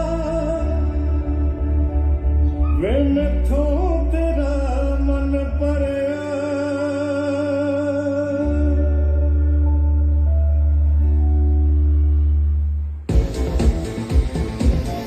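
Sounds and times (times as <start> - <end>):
song with held vocal note: 0.0 - 11.2
deep bass tone: 0.0 - 15.0.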